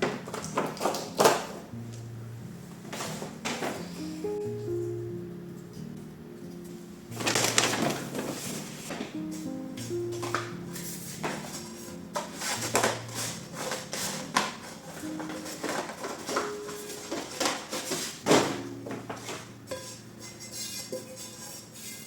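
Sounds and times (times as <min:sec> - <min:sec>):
dishes and utensils clattering: 0:00.0 - 0:01.7, 0:02.9 - 0:04.2, 0:07.1 - 0:22.0
soft slow background music: 0:00.0 - 0:22.0.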